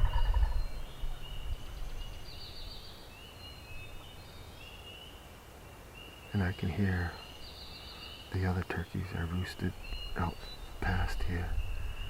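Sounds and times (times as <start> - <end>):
distant turkey gobble: 0.0 - 1.4
songbirds whistling and trilling: 0.0 - 12.0.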